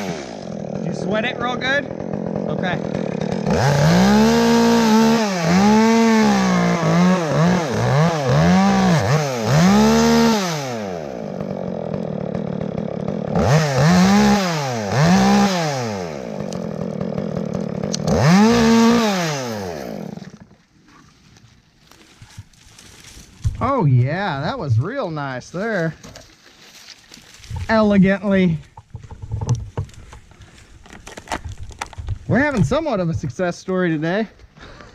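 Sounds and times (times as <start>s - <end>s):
chainsaw engine revving: 0.0s - 20.6s.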